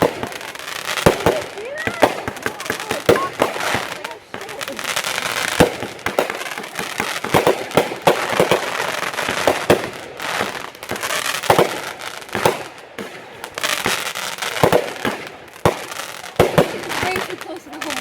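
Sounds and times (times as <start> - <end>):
firework shell bursts and bangs: 0.0 - 18.0
fireworks crackling: 0.0 - 18.0.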